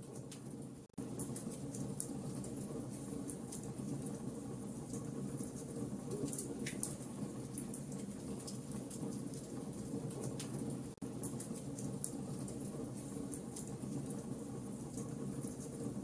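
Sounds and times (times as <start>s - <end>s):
low rumble of flames: 0.0s - 16.0s
fire crackles and pops: 4.9s - 14.2s.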